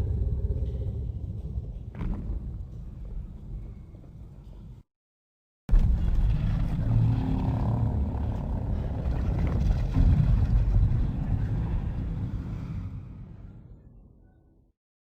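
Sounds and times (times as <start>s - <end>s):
deep heavy rumbling: 0.0s - 4.4s, 5.7s - 13.7s.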